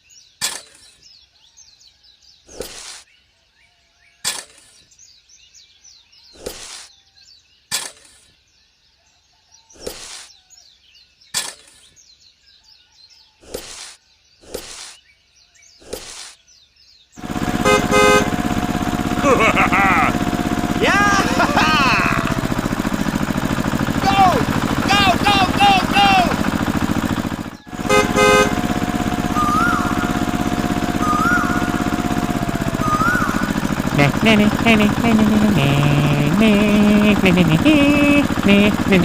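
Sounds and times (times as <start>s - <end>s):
birds chirping: 14.2s - 39.0s
short noisy bursts and clicks: 17.2s - 39.0s
small motor running: 17.2s - 39.0s.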